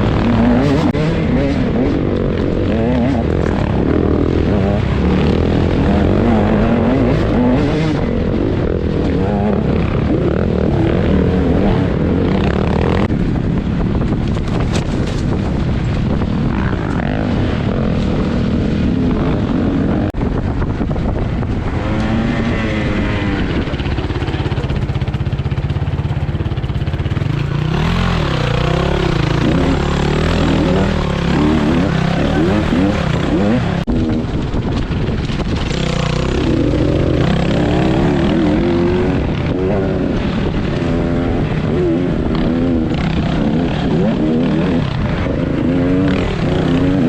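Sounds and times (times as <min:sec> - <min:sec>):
dirt bike engine revving: 0:00.0 - 0:13.1, 0:21.7 - 0:34.4, 0:35.5 - 0:47.0.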